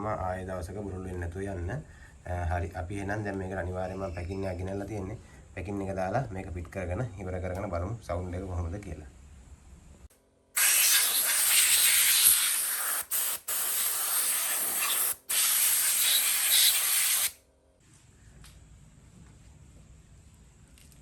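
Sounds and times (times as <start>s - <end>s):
pressurised jet hissing: 10.6s - 17.4s.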